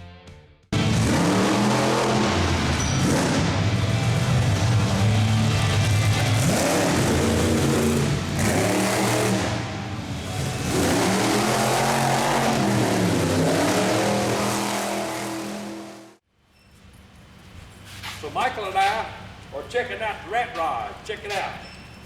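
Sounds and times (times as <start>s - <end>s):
engine revving: 0.8s - 16.2s.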